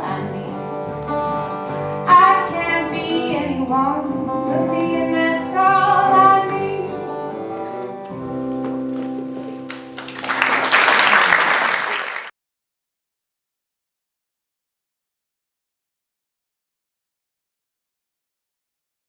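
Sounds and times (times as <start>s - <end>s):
person singing: 0.0s - 0.8s, 1.9s - 7.6s
acoustic guitar: 0.0s - 10.4s
audience applause: 9.7s - 12.3s.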